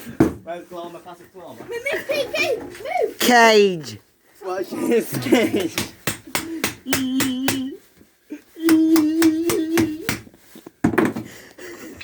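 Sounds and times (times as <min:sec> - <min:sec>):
person humming: 0:06.8 - 0:07.8, 0:08.5 - 0:10.3.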